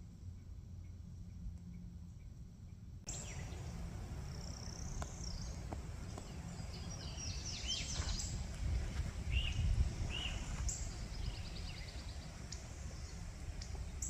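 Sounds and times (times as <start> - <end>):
steady low rumble: 0.0 - 14.0
birds chirping: 0.4 - 14.0.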